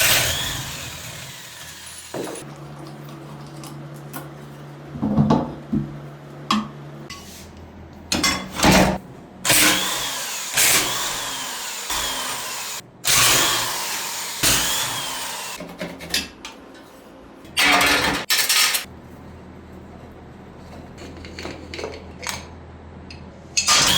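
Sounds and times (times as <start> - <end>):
handheld power tool running: 0.0 - 2.4, 9.5 - 15.6.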